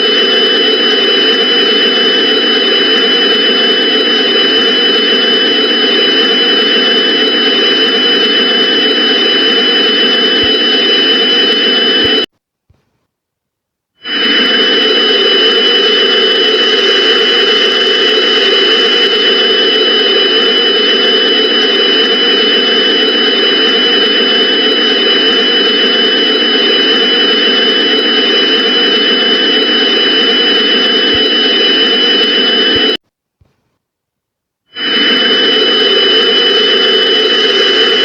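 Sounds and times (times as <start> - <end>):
loud hissing drone: 0.0 - 12.3.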